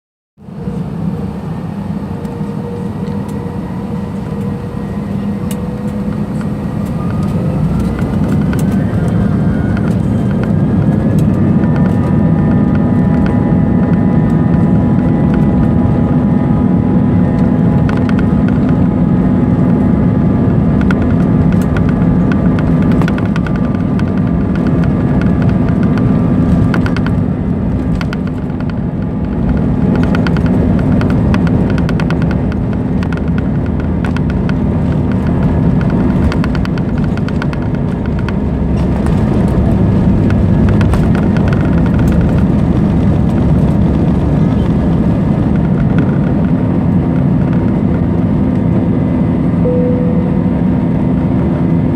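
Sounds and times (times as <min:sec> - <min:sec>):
jet engine rumble from cabin: 0:00.4 - 0:51.9
jet engine whine rising: 0:00.4 - 0:51.9.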